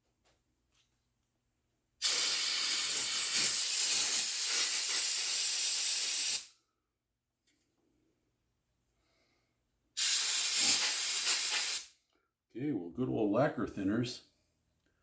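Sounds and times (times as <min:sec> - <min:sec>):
pressurised jet hissing: 0:02.0 - 0:06.5, 0:10.0 - 0:11.9.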